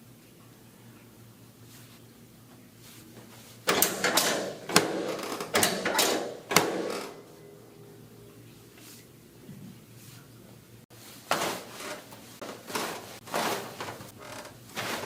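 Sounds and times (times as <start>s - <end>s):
short rustling: 10.9s - 15.0s.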